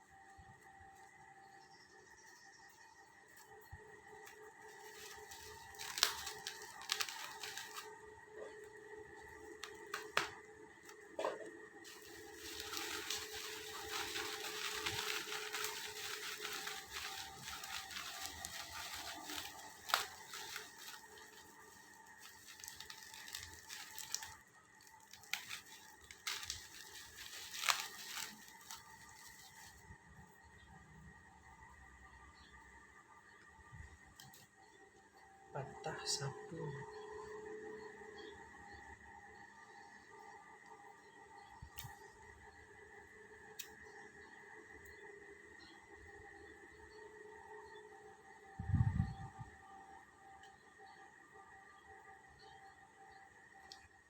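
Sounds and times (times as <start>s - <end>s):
wrapping crinkling and tearing: 3.3s - 11.0s, 11.8s - 30.0s.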